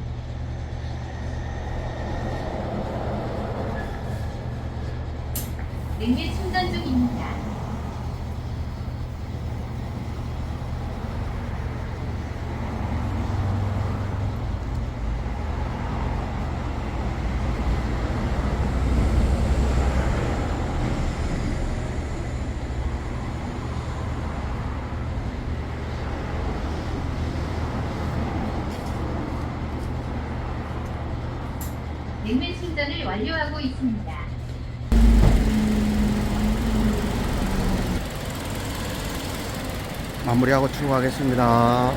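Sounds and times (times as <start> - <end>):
car engine idling: 34.9 - 41.9.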